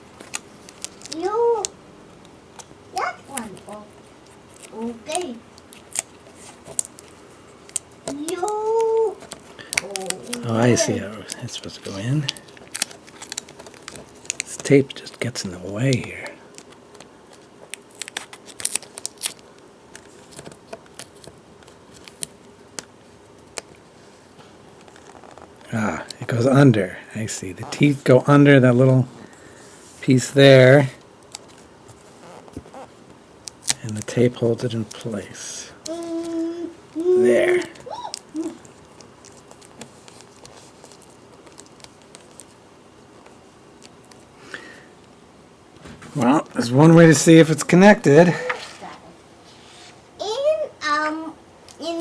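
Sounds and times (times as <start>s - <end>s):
adhesive tape clicks and crinkles: 0.2s - 2.7s, 3.3s - 10.6s, 11.2s - 23.8s, 31.2s - 35.1s, 35.8s - 37.0s, 37.7s - 42.6s, 43.2s - 44.3s.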